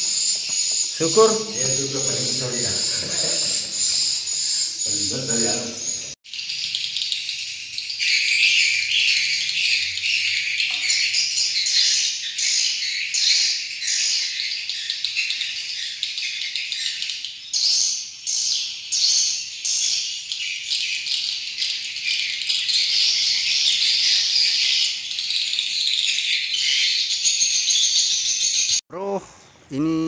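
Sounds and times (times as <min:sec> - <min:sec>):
swiftlets twittering: 0:00.0 - 0:06.9.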